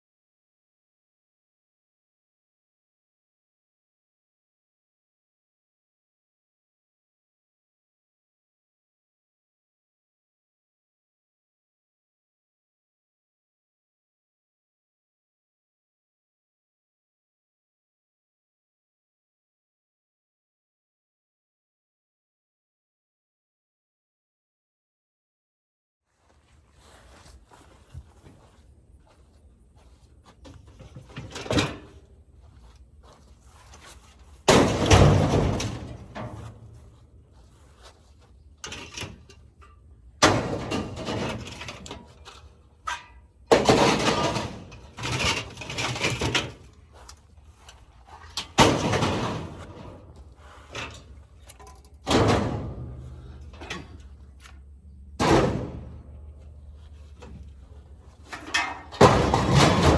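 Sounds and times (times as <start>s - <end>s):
scrap metal crashing onto pile: 34.5s - 36.6s, 42.9s - 46.6s, 48.4s - 51.0s, 58.2s - 59.9s.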